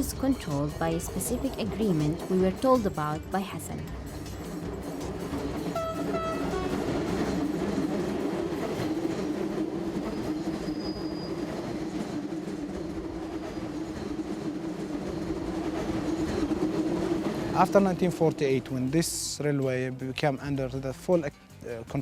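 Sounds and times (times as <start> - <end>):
train rumble: 0.0 - 20.8
train horn toots: 5.7 - 7.4.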